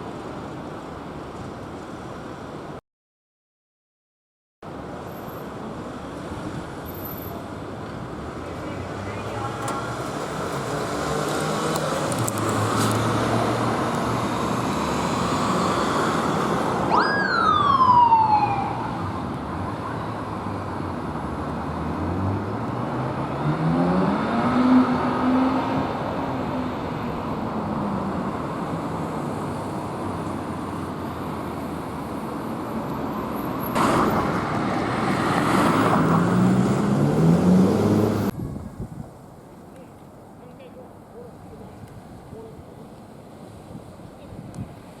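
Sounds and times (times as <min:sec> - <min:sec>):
road traffic: 0:00.0 - 0:02.8, 0:04.6 - 0:45.0
police siren wail: 0:16.8 - 0:19.2
vehicle engine revving: 0:34.9 - 0:38.3.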